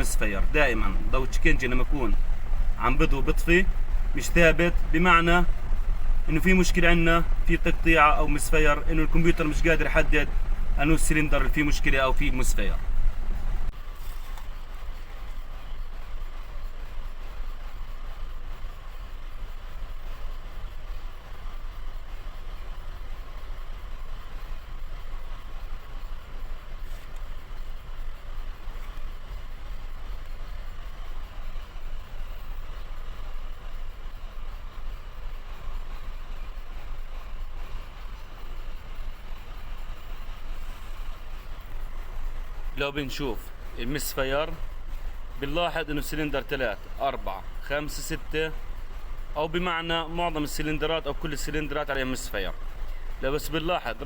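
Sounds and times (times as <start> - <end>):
car engine idling roughly: 0.0 - 54.0.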